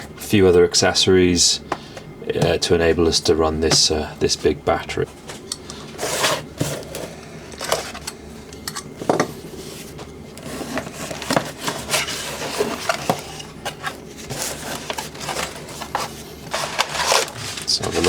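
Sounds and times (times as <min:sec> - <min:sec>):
accessories and packaging handled: 0:09.9 - 0:18.0.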